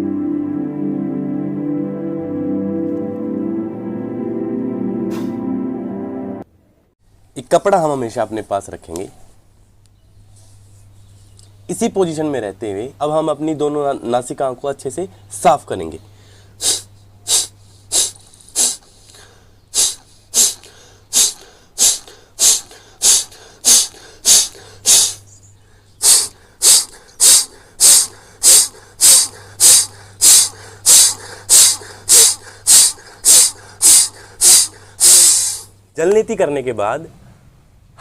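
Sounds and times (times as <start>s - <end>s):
forceful nasal exhalations: 5.1s - 5.5s, 16.1s - 35.8s.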